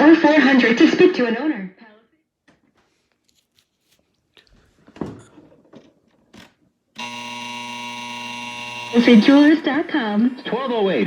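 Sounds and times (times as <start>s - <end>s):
steady electric buzz: 7.0s - 11.0s.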